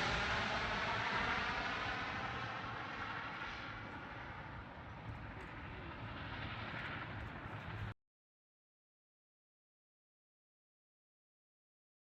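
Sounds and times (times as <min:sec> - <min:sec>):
airplane flying past: 0:00.0 - 0:08.0.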